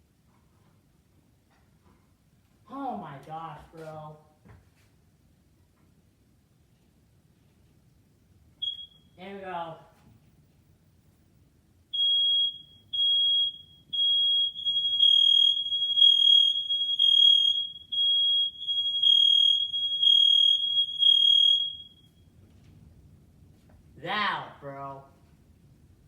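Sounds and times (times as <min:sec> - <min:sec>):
smoke alarm beeping: 0:08.6 - 0:09.3, 0:11.9 - 0:22.4.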